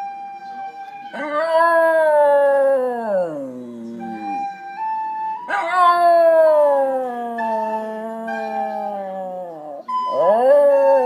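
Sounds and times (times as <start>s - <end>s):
flute playing steady notes: 0.0s - 11.0s
dog howling: 1.2s - 4.4s, 5.5s - 11.0s.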